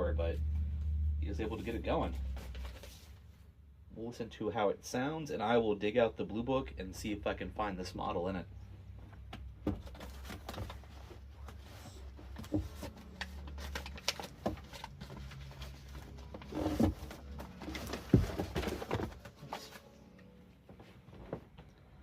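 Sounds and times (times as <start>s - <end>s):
low steady hum: 0.0s - 22.0s
rustling and knocks handling book: 1.5s - 3.2s, 9.0s - 19.9s, 20.7s - 21.9s.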